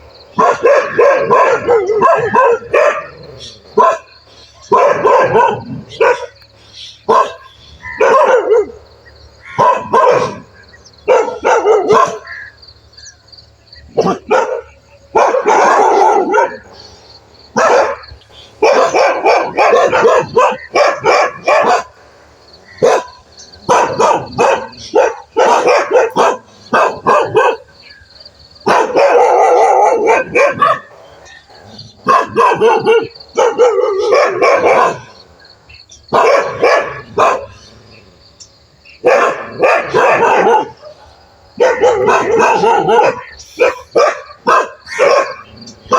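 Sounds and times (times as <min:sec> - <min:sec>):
dog barking rapidly: 0:00.3 - 0:06.4, 0:07.0 - 0:08.8, 0:09.4 - 0:12.6, 0:13.8 - 0:16.8, 0:17.5 - 0:22.0, 0:22.6 - 0:27.8, 0:28.6 - 0:35.2, 0:36.1 - 0:37.7, 0:39.0 - 0:45.9.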